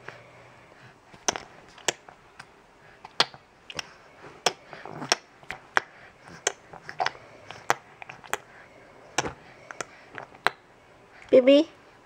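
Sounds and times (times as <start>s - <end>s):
baby clicking tongue: 1.2s - 8.5s.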